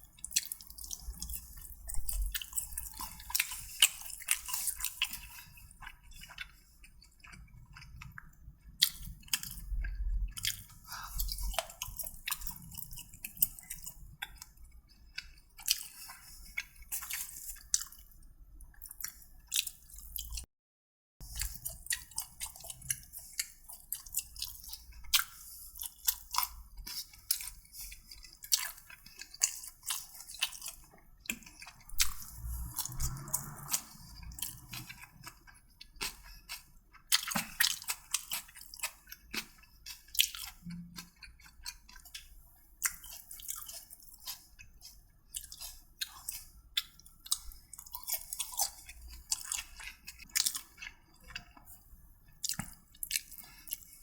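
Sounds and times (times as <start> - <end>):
person chewing and crunching food: 0.0 - 20.5, 21.2 - 54.0.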